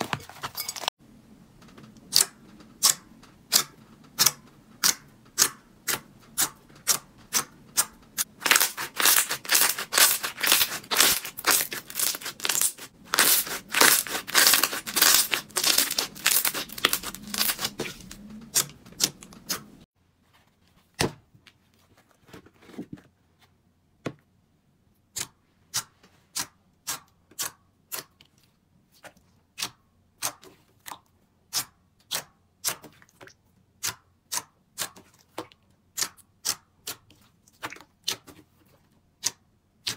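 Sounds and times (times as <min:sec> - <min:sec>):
slime popping and crackling: 0:08.3 - 0:19.7.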